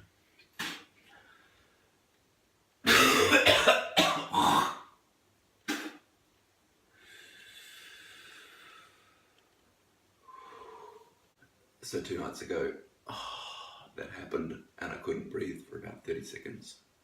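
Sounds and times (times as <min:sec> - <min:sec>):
man coughing harshly: 0:02.9 - 0:04.8
steady hiss: 0:05.0 - 0:17.0.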